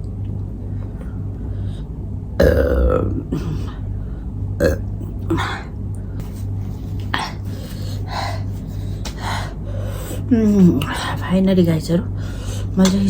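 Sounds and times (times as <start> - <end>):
steady low hum: 0.0 - 13.0
short burp-like noises: 2.4 - 3.3, 4.6 - 5.4.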